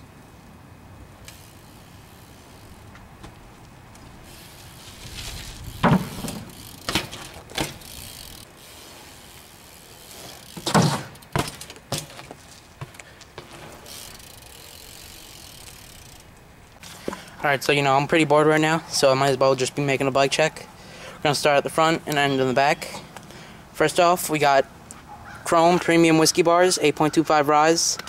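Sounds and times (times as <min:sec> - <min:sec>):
steady background hiss: 0:00.0 - 0:25.1
bmx bike knocks and clunks: 0:02.9 - 0:03.4, 0:05.2 - 0:08.0, 0:10.2 - 0:14.3.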